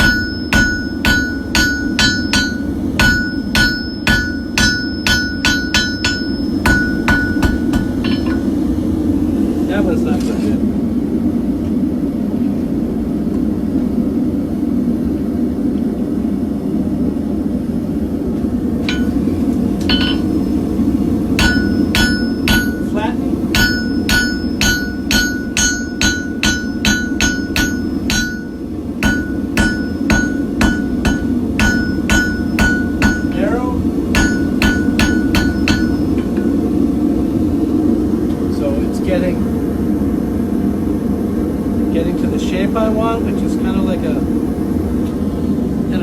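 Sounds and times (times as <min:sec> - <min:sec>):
hammer striking steel on anvil: 0:00.0 - 0:08.6, 0:18.8 - 0:20.6, 0:21.4 - 0:36.6
gas forge burner roaring: 0:00.0 - 0:46.0.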